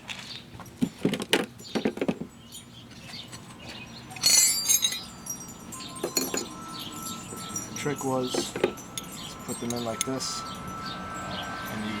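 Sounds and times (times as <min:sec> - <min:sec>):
steel wrenches clinking: 0:02.5 - 0:10.8.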